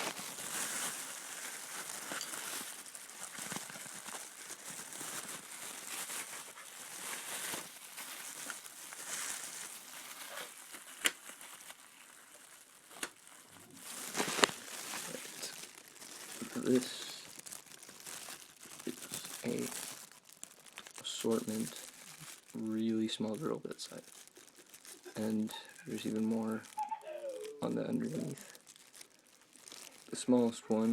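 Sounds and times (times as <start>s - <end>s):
case handling rustling and crinkling: 0.0s - 11.8s, 12.4s - 18.9s.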